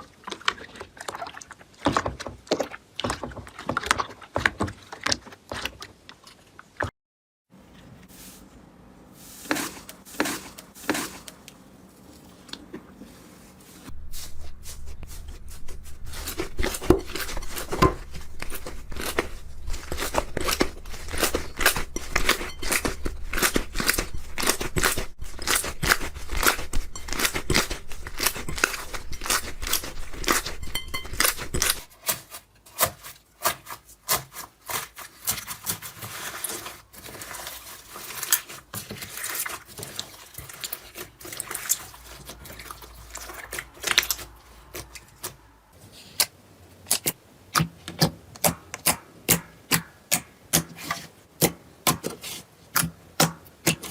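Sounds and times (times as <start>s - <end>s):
low hum: 13.9s - 31.9s.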